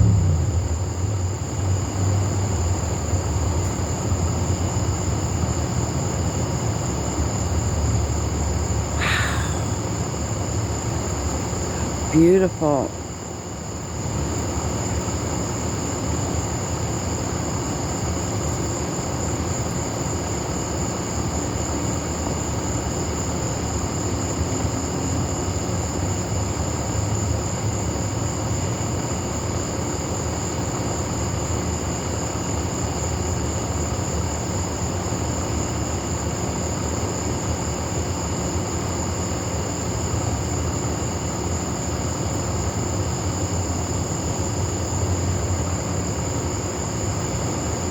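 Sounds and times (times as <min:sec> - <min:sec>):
low rumble: 0:00.0 - 0:02.9
insect chorus trilling: 0:00.0 - 0:47.9.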